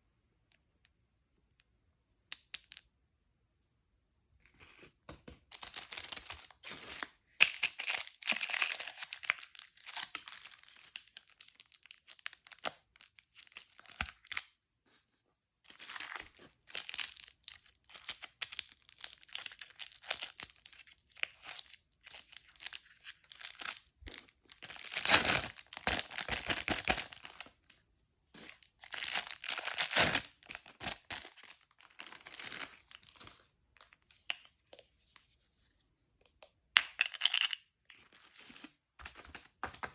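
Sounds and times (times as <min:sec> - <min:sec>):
plastic wrappers crinkling and tearing: 0:05.5 - 0:14.4, 0:15.7 - 0:27.7, 0:28.4 - 0:33.4.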